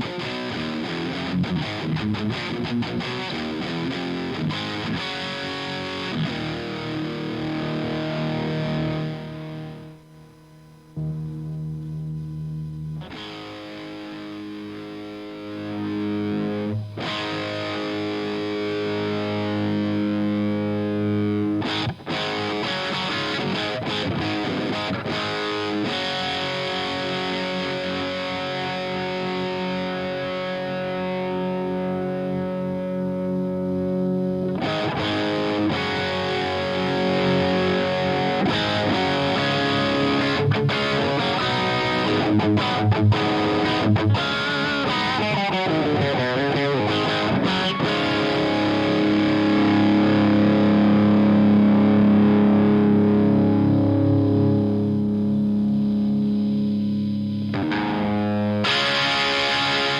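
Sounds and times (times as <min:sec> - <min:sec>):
distorted electric guitar chord: 0:00.0 - 0:59.9.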